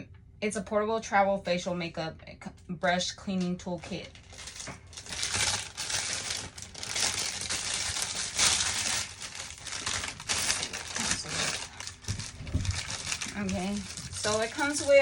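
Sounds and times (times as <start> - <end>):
plastic packaging crinkling: 3.8 - 15.0.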